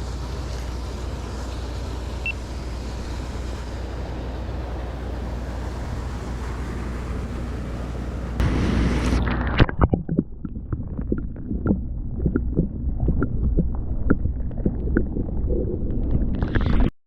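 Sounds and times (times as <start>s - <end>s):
creek water rushing: 0.0s - 9.8s
wind on microphone: 5.4s - 16.9s.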